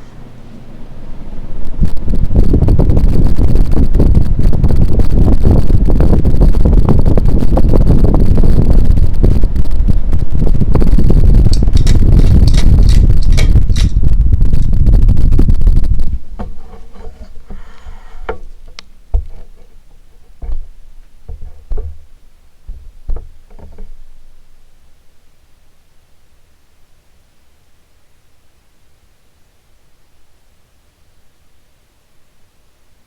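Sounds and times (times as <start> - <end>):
fan air buffeting microphone: 0.0 - 25.6
knocks and light clicks: 16.4 - 24.3.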